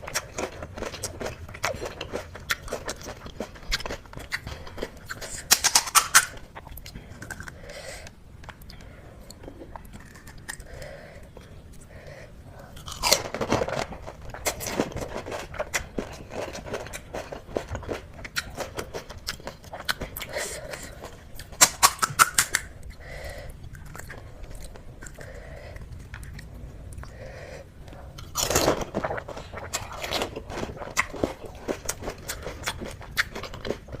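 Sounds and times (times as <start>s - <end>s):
crunching crisp shells: 0.1s - 8.6s, 9.6s - 10.9s, 12.8s - 22.7s
wet chewing: 12.6s - 34.0s.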